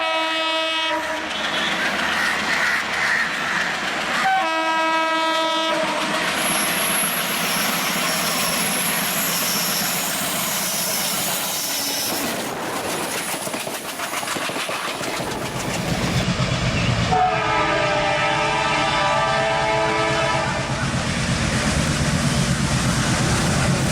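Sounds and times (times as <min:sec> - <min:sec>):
diesel locomotive horn: 0:00.0 - 0:01.8, 0:04.2 - 0:07.5, 0:16.8 - 0:20.8
train wheels rumbling on rails: 0:00.0 - 0:23.9
clickety-clack of wheels: 0:01.0 - 0:04.3, 0:10.9 - 0:16.3
high wheel squeal: 0:01.2 - 0:03.7, 0:06.4 - 0:12.4.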